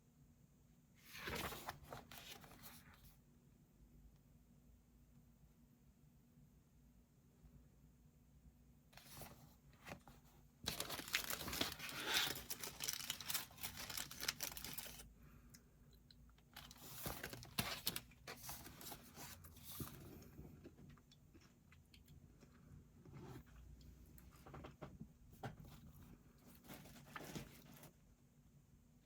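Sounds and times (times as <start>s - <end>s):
dry rustling and crinkling: 9.0s - 15.1s, 16.5s - 21.5s, 25.5s - 28.0s.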